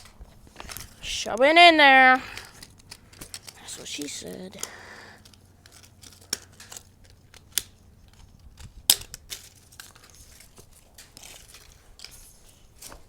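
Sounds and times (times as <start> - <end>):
crinkling rustles: 0.0 - 13.0
sharp plastic clicks: 4.6 - 10.2.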